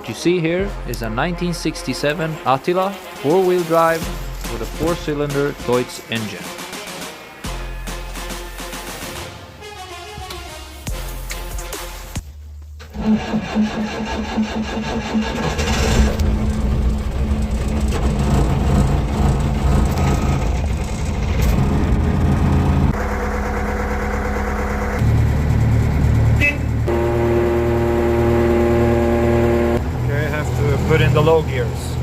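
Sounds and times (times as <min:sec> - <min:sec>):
diesel engine starting and running: 0:12.8 - 0:32.0.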